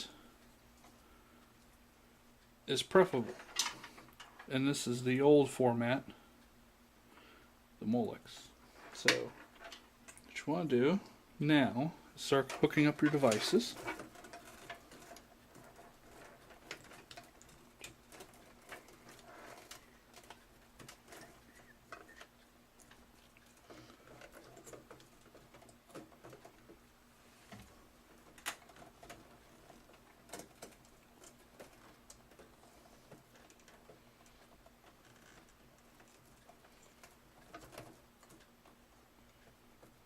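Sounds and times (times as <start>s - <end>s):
cables rustling and connectors clicking: 8.3s - 10.4s, 12.2s - 40.0s.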